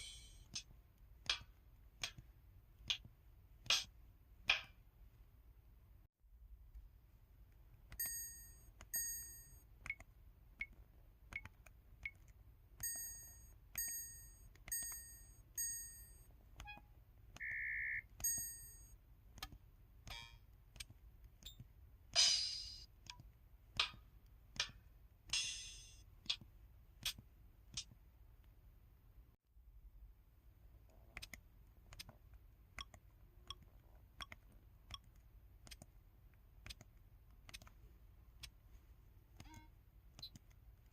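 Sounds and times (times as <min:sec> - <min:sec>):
held beep: 0:08.0 - 0:10.0, 0:12.8 - 0:19.0
electronic drum keypad tones: 0:12.8 - 0:19.0.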